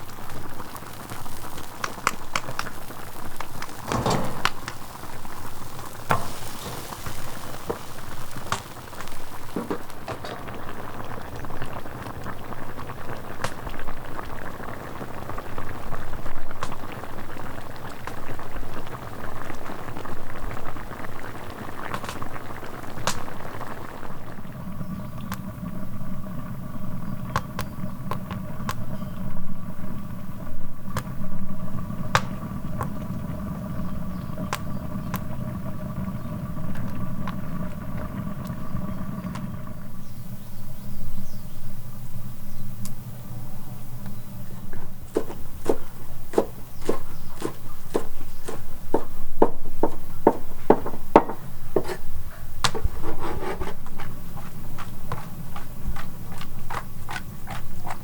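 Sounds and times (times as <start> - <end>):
sharp crackles: 0.0 - 43.0
food bubbling and sizzling: 0.0 - 58.0.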